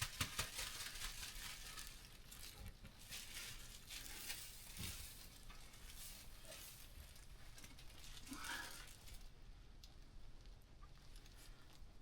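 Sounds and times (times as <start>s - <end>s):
rustling and soft patter: 0.0s - 12.0s.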